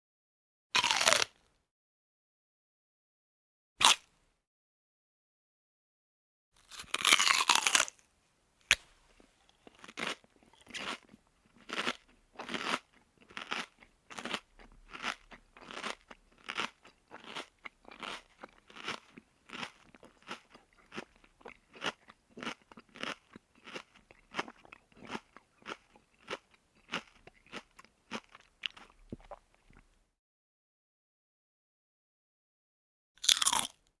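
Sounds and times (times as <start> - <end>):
crunchy food chewing: 0.8 - 1.4, 6.6 - 8.0, 8.7 - 30.0, 33.2 - 33.8.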